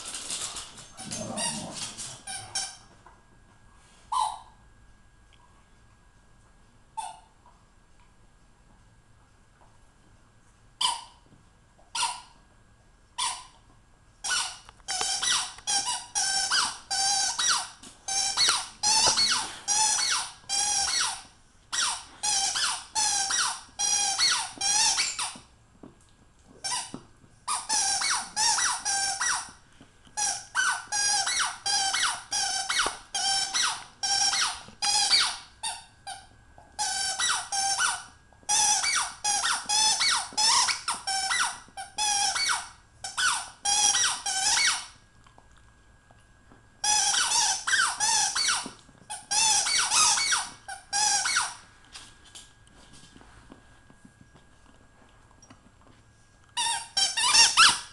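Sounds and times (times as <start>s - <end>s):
squeaky dog toy squeaking: 4.1s - 4.5s, 7.0s - 7.3s, 10.8s - 11.2s, 11.9s - 12.4s, 13.2s - 13.6s, 14.2s - 25.4s, 26.6s - 29.5s, 30.2s - 36.2s, 36.8s - 44.9s, 46.8s - 51.6s, 56.6s - 57.9s.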